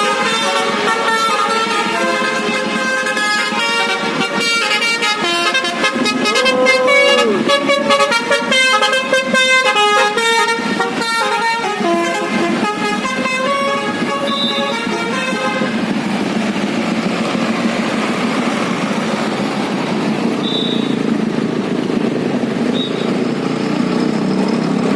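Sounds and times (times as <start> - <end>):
horn playing quick melody: 3.6 - 15.6.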